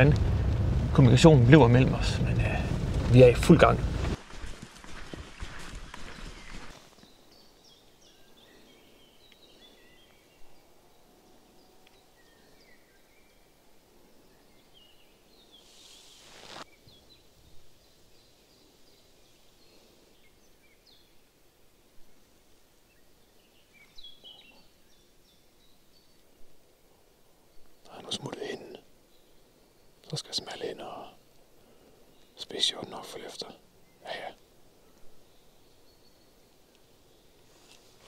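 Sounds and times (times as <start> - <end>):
faint birdsong chirps: 5.0 - 38.0
short rush of noise: 15.6 - 16.7.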